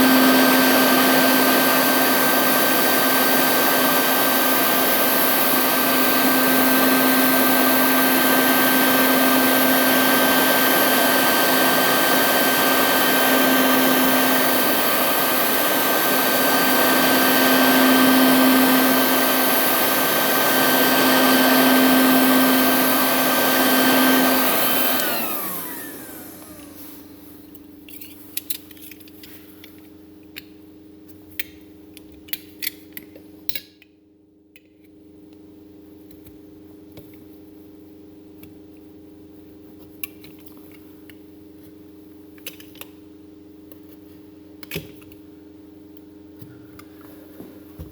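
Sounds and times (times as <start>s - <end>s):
electric power tool whining: 0.0s - 27.1s.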